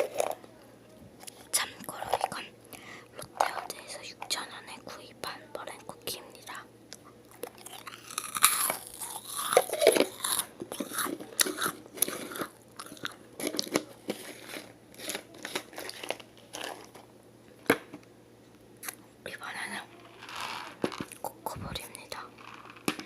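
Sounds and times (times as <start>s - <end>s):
crunchy cookie chewing: 6.4s - 17.1s, 18.8s - 19.0s.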